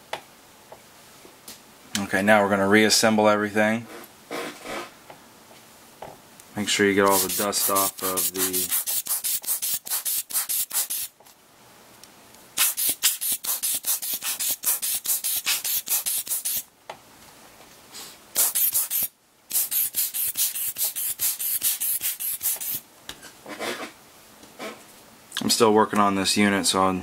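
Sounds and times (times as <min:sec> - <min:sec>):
quick rubbing strokes: 0:07.0 - 0:11.1, 0:12.6 - 0:16.7, 0:18.0 - 0:22.8.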